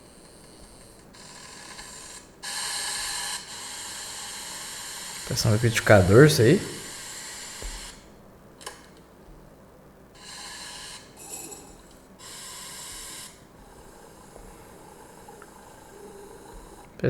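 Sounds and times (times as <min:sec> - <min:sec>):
espresso machine steam hissing: 0:00.1 - 0:08.0.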